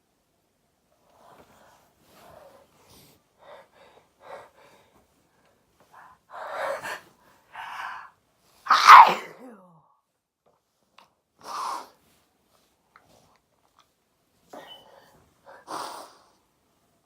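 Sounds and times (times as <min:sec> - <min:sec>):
person sneezing: 0:08.7 - 0:09.6.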